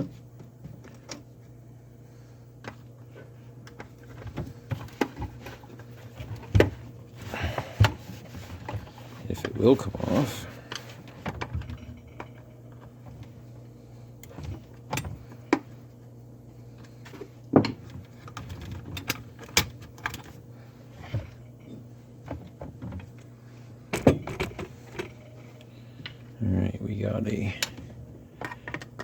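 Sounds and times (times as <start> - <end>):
low steady hum: 0.0 - 29.0.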